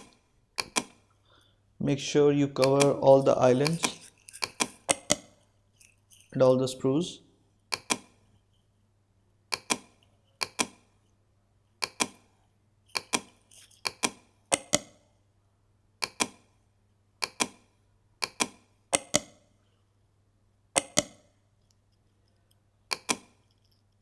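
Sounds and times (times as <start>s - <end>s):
computer mouse clicking: 0.0s - 1.0s, 2.6s - 6.4s, 7.7s - 8.2s, 9.5s - 10.9s, 11.8s - 12.3s, 12.9s - 15.0s, 16.0s - 16.5s, 17.2s - 19.4s, 20.8s - 21.8s, 22.9s - 23.6s.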